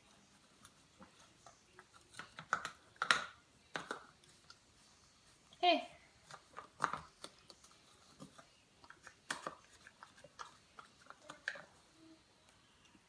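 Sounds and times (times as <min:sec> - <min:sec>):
dog chewing and mouth clicks: 0:06.3 - 0:11.9.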